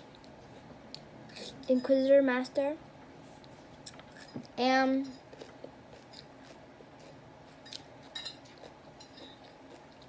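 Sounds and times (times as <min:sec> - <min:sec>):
utensil clinking on plate: 0:07.7 - 0:09.4.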